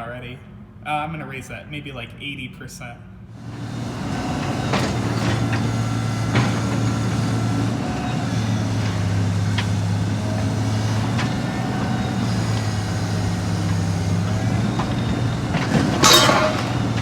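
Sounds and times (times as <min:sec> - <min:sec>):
diesel machine running: 0:03.3 - 0:17.0
sharp knocks and clanks: 0:04.2 - 0:17.0.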